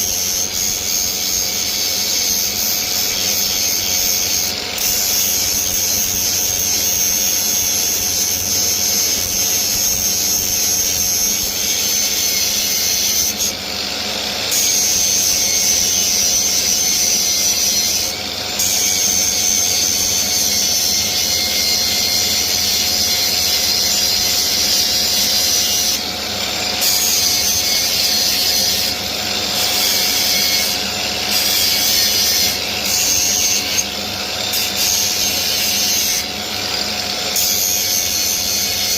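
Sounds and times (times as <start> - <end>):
angle grinder rasping on wood: 0.0 - 38.9.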